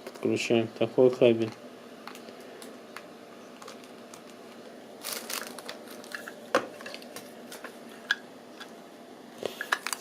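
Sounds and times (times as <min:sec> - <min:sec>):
cable rustle: 0:05.0 - 0:07.7.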